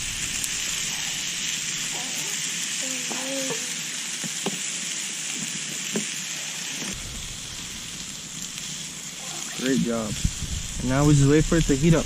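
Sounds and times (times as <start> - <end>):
steak sizzling over a campfire: 0.0 - 12.0
low rumble: 7.0 - 8.7, 9.8 - 12.0.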